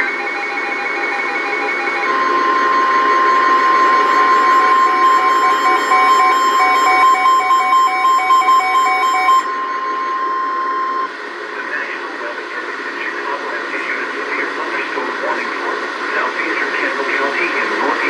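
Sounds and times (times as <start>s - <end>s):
rhythmic beeping: 0.0s - 11.2s
steady high alarm tone: 0.0s - 11.4s
radio hiss: 11.2s - 18.0s.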